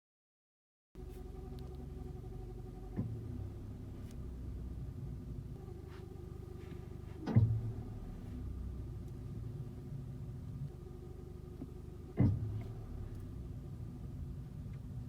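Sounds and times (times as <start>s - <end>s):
car cabin hum: 1.0s - 15.0s
loud low clunk: 7.2s - 8.2s.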